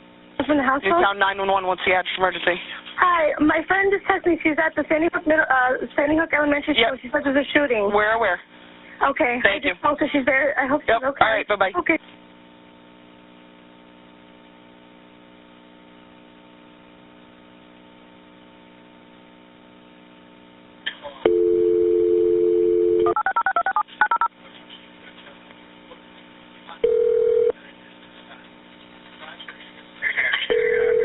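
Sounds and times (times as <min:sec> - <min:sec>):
faint telephone line hum: 0:21.0 - 0:28.6, 0:29.5 - 0:31.0
dial tone: 0:21.3 - 0:24.3, 0:26.8 - 0:27.6, 0:30.5 - 0:31.0.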